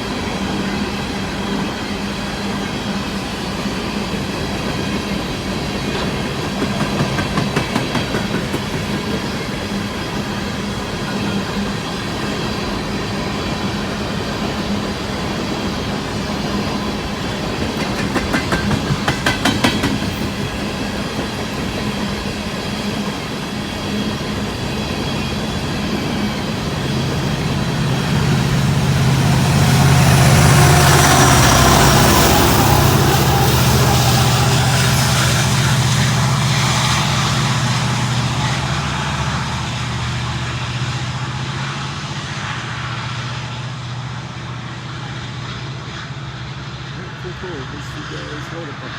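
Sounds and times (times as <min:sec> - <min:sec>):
locomotive engine drone: 0:00.0 - 0:48.9
train cars rolling on rails: 0:00.0 - 0:48.9
wheel clicks over rail joints: 0:17.6 - 0:20.2.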